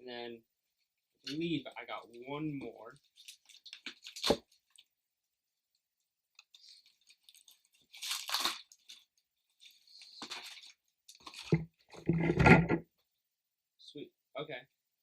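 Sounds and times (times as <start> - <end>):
packaging rustling and crinkling: 6.6 - 12.5.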